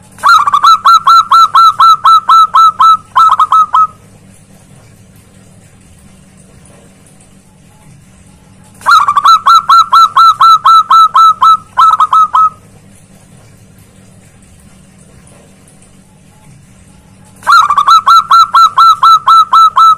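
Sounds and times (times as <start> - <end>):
dove calling rapidly: 0.2 - 4.0, 8.8 - 12.6, 17.4 - 19.9.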